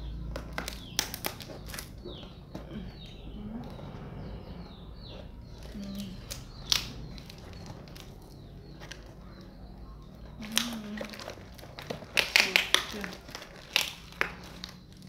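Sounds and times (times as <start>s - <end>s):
wrapping crinkling and clicking: 0.0s - 2.7s, 5.6s - 15.0s
small bird chirping: 0.0s - 15.0s.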